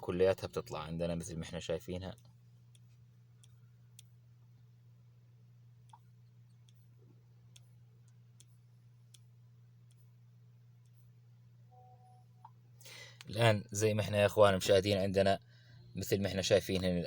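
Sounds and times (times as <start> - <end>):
steady low hum: 0.0 - 17.0
faint irregular clicks: 2.1 - 4.7, 5.8 - 11.2.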